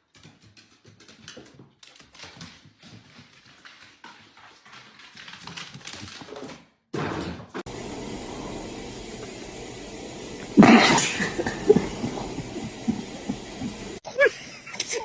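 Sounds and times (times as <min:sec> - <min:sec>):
dog making small sounds: 0:10.2 - 0:14.4.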